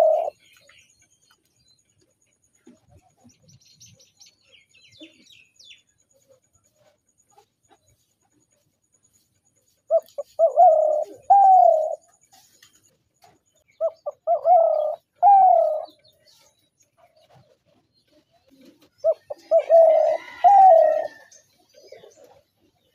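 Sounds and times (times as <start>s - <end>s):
dove cooing: 0.0s - 0.4s, 9.9s - 12.5s, 13.8s - 16.2s, 18.4s - 22.5s.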